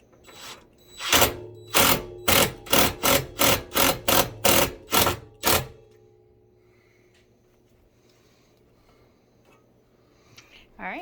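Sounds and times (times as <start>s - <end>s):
electric drill drilling: 0.3s - 5.7s
rasping bursts: 0.3s - 5.8s.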